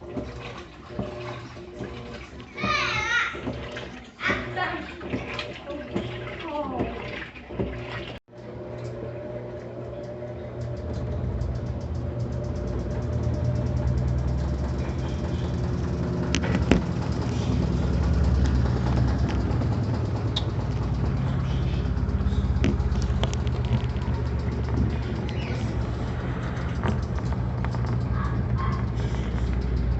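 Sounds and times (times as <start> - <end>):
washing machine motor hum: 0.0 - 29.9
fast faint ticking: 10.8 - 29.9.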